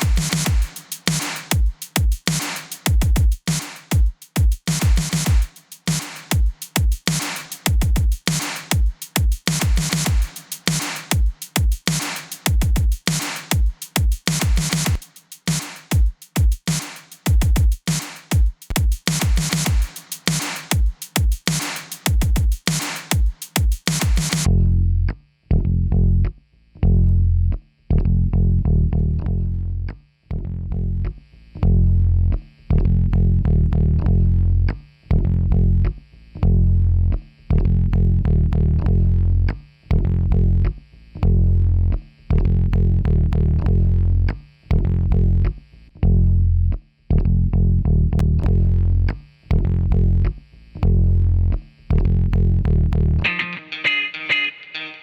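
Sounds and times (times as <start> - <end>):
distorted bass and guitar riff: 39.9 - 55.0.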